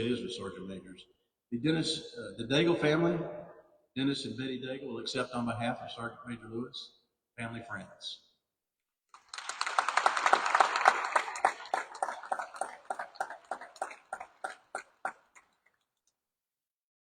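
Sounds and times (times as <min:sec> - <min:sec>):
audience applauding: 0:09.2 - 0:15.8.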